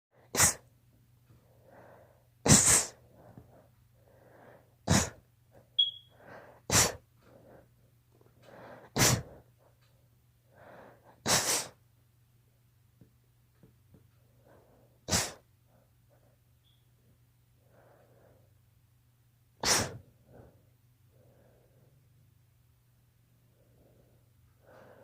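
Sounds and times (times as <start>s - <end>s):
girl sneezing: 0.4s - 0.6s, 2.5s - 3.0s, 4.9s - 5.2s, 6.7s - 7.0s, 9.0s - 9.3s, 11.3s - 11.8s, 15.1s - 15.4s, 19.6s - 20.0s.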